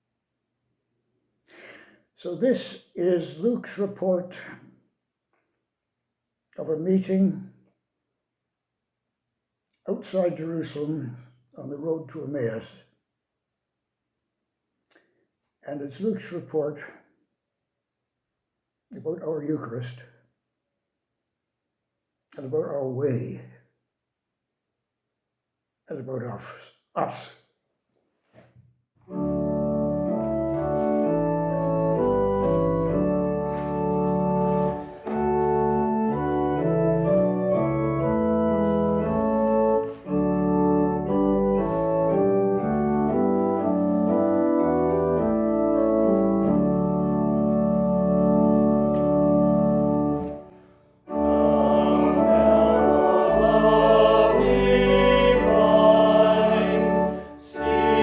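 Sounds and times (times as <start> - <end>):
organ playing hymn: 29.1 - 58.0
voices singing: 51.1 - 58.0.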